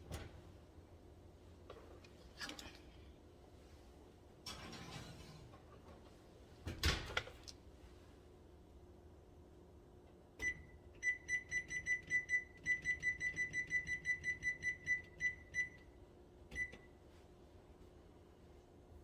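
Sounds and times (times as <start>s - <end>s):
oven timer beeping: 10.4s - 17.0s.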